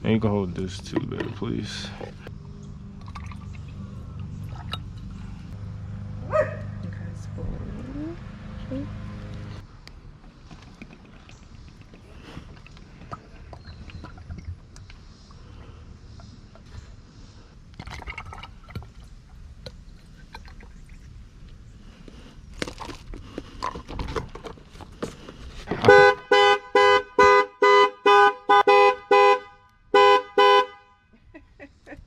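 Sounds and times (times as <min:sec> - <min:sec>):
vehicle horn short blasts: 0:25.8 - 0:31.1.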